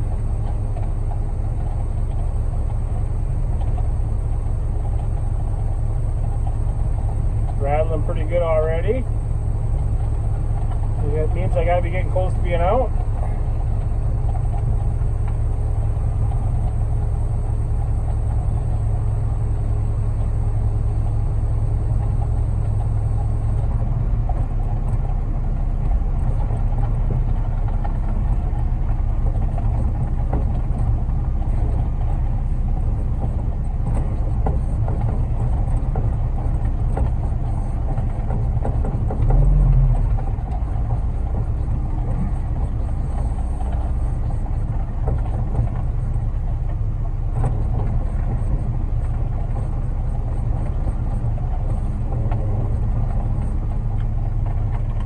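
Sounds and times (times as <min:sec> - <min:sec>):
faint high whine: 0:00.0 - 0:38.6
concrete mixer truck running: 0:00.0 - 0:55.0.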